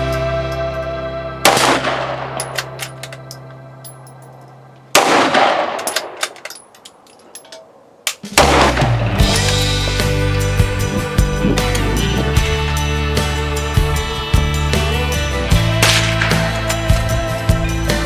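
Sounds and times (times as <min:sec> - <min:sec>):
echoing gunshots: 0:01.5 - 0:02.8, 0:04.9 - 0:06.4, 0:08.4 - 0:09.5, 0:15.8 - 0:16.6
light metallic clinks: 0:05.8 - 0:07.7.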